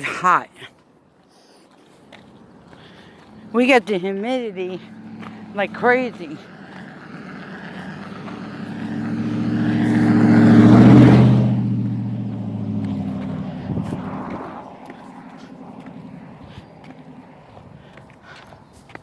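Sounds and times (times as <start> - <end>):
vehicle driving past: 2.7 - 3.8, 4.4 - 18.1.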